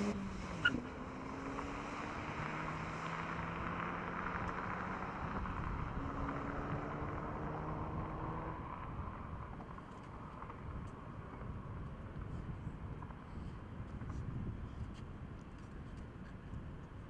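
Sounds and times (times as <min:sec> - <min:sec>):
car engine humming: 0:00.0 - 0:10.5
road and wind noise: 0:00.0 - 0:17.0.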